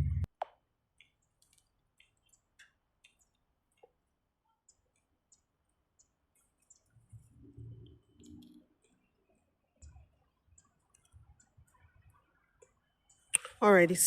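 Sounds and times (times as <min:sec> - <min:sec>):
soft low sounds: 0:00.0 - 0:00.3, 0:04.4 - 0:13.7.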